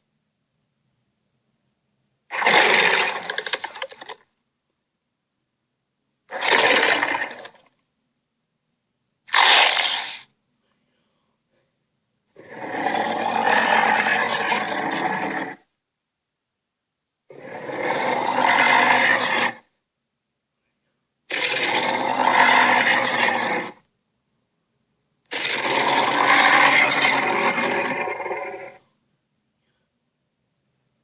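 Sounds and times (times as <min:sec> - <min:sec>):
creature roars: 0:02.3 - 0:04.2, 0:06.3 - 0:07.6, 0:12.4 - 0:15.6, 0:17.3 - 0:19.7, 0:21.3 - 0:23.8, 0:25.3 - 0:28.8.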